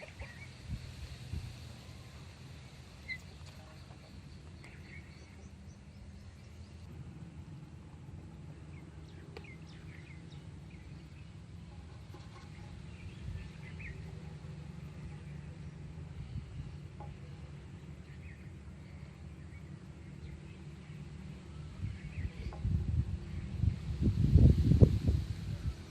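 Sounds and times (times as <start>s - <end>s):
steady low hum: 0.0s - 25.9s
faint bird chirps: 1.8s - 6.9s, 8.6s - 24.0s.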